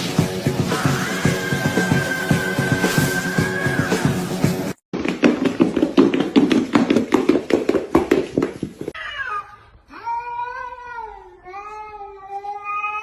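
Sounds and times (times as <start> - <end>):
cat yowling: 9.0 - 11.0.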